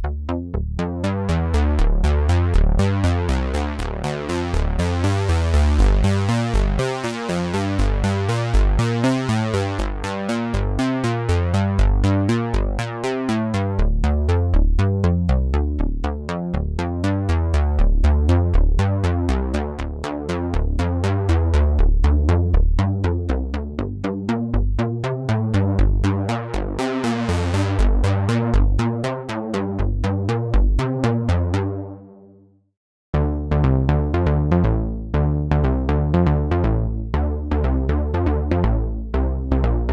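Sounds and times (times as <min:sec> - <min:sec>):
drum machine beat: 0:11.8 - 0:12.2.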